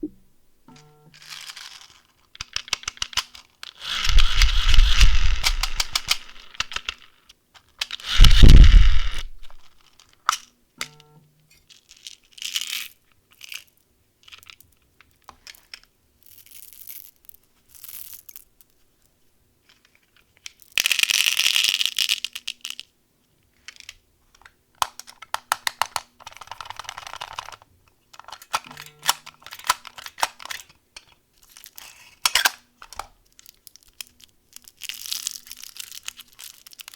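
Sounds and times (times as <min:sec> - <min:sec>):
plastic wrappers crinkling and tearing: 0:01.2 - 0:07.1, 0:07.7 - 0:10.4, 0:31.4 - 0:36.9.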